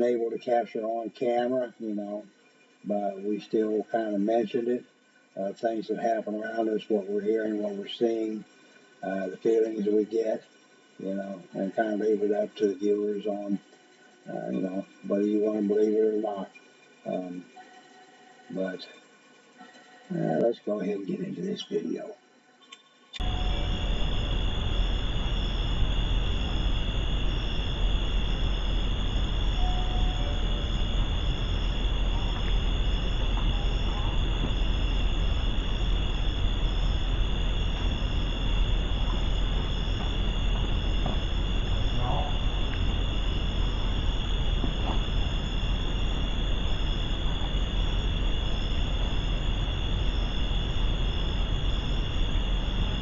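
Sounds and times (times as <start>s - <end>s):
crickets trilling: 0.0s - 22.6s, 23.2s - 53.0s
constant hiss: 0.0s - 53.0s
pulsing chirp: 23.2s - 53.0s.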